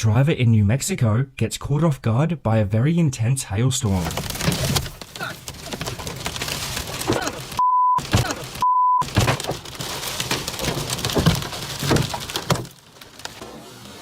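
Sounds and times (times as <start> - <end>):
hailstones pelting a vehicle: 3.9 - 14.0
censor bleeps: 7.6 - 8.0, 8.6 - 9.0.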